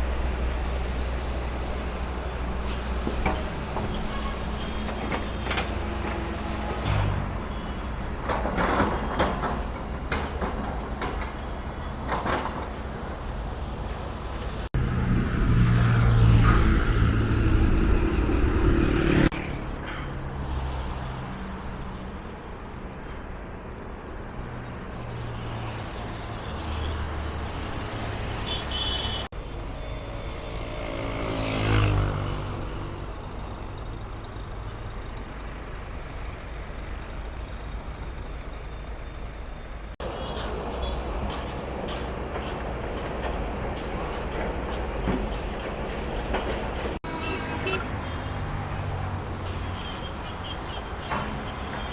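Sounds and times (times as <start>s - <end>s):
road traffic: 0.0s - 51.9s
vehicle passing close: 14.8s - 19.3s.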